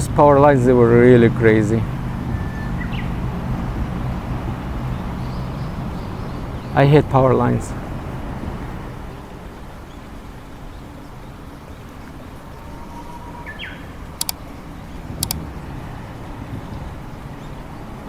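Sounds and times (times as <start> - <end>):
distant road traffic rumble: 0.0 - 9.5, 13.4 - 15.5
bird call: 1.3 - 9.2.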